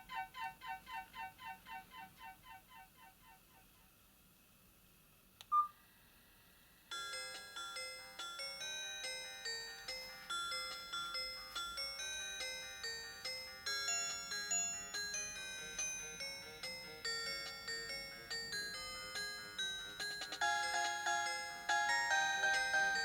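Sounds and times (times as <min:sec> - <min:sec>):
sharp click with short beep: 0:05.4 - 0:05.7
phone ringtone melody: 0:19.9 - 0:23.0.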